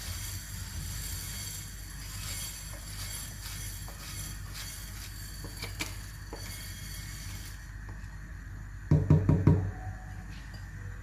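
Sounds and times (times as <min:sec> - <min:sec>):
pot of soup boiling: 0:00.0 - 0:08.8.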